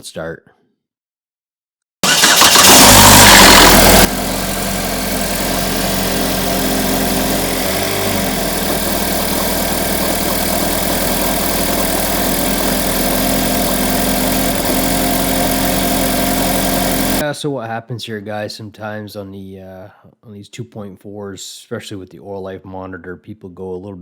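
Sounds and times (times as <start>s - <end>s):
car engine idling: 2.0s - 17.2s
engine rattle: 2.0s - 17.2s.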